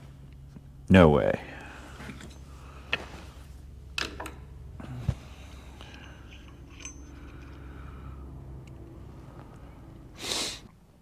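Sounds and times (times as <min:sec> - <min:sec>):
steady low hum: 0:00.0 - 0:11.0
metal parts clicking and knocking: 0:05.1 - 0:07.8.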